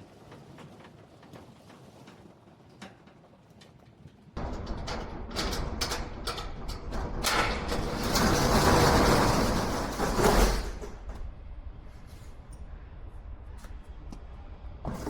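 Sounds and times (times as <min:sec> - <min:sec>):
metal door clicks and knocks: 0:04.4 - 0:11.3
metal door rolling open: 0:04.4 - 0:12.5
low steady rumble: 0:04.4 - 0:15.0.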